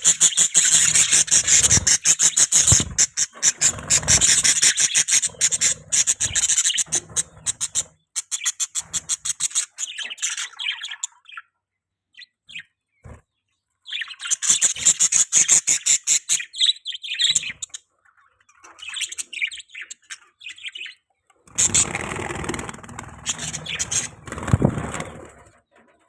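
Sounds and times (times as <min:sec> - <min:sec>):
budgerigars chirping: 0:00.0 - 0:11.6, 0:13.8 - 0:25.4.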